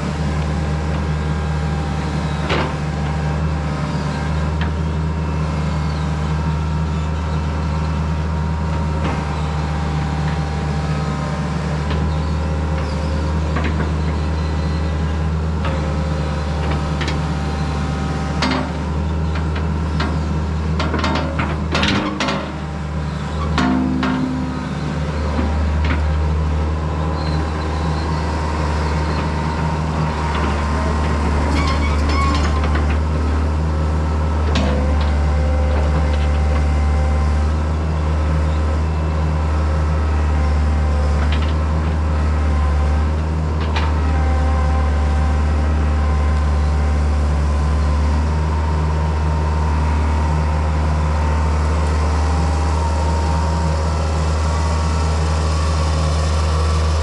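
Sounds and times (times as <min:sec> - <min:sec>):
diesel engine running: 0:00.0 - 0:57.0.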